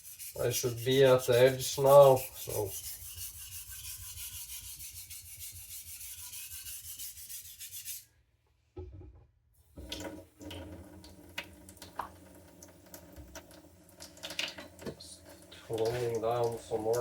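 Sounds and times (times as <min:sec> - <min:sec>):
knife scraping on whetstone: 0:00.0 - 0:08.1.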